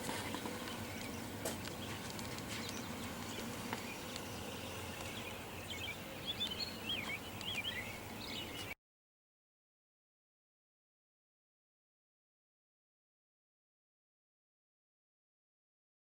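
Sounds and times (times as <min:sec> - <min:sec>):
small birds chirping: 0:00.0 - 0:08.8
steady background noise: 0:00.0 - 0:08.8.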